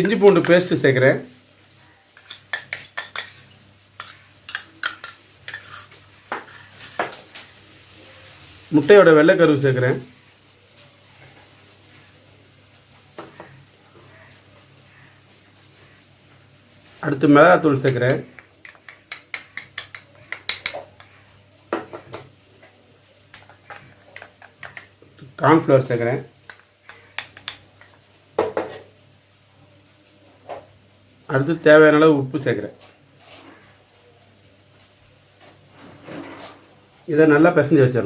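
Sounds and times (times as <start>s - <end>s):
spoon tapping against a bowl: 2.2s - 3.4s, 4.0s - 5.6s, 17.9s - 21.1s, 21.8s - 24.9s, 26.5s - 28.9s
spoon clinking against bowl: 22.1s - 24.9s, 26.5s - 28.9s.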